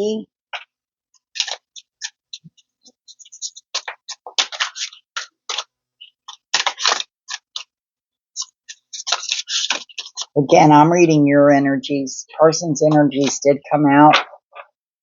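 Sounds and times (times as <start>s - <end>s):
cards clicking and flicking: 3.3s - 7.7s.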